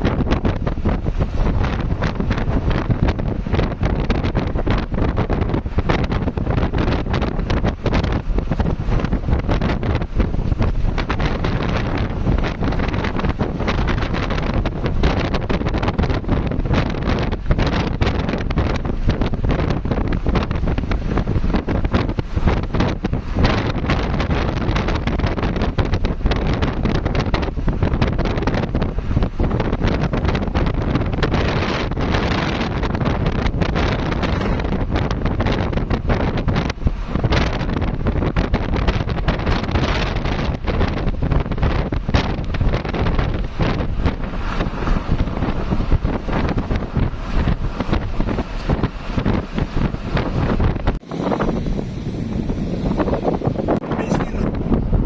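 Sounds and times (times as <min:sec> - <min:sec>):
wind buffeting microphone: 0:00.0 - 0:55.0
low rumble: 0:36.7 - 0:55.0.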